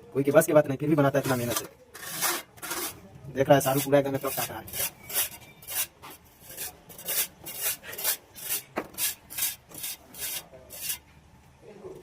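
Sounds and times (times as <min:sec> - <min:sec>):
float scraping wet plaster: 0:01.2 - 0:03.0, 0:03.6 - 0:11.0.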